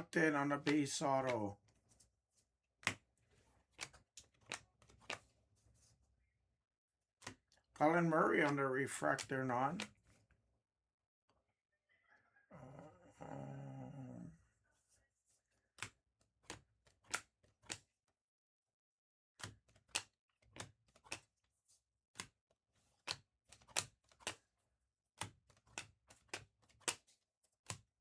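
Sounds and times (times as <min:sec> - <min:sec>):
trading cards snapping: 0:09.2 - 0:09.9, 0:23.1 - 0:24.4.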